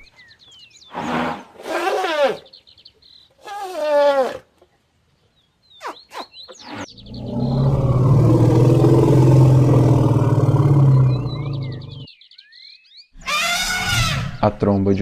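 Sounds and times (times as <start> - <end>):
small birds chirping: 0.0 - 14.5
elephant rumbling growl: 6.8 - 12.1.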